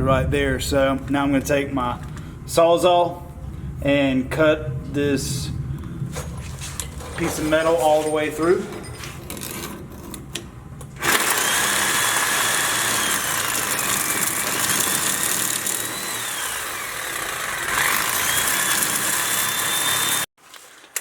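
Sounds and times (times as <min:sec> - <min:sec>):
reciprocating saw cutting steel: 0:11.0 - 0:20.3.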